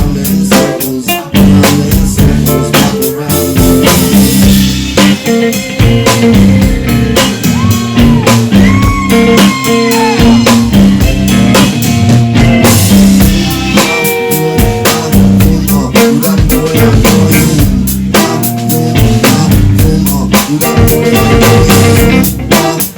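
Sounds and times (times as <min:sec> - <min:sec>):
bass line: 0:00.0 - 0:22.9
drum kit beat: 0:00.0 - 0:22.9
sliding notes: 0:02.5 - 0:19.8.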